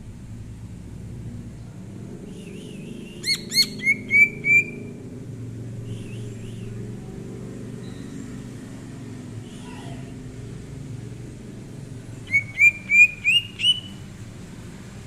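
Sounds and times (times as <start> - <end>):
low steady rumble: 0.0 - 15.0
bird whistling upward slurs: 2.4 - 4.8, 12.3 - 14.0.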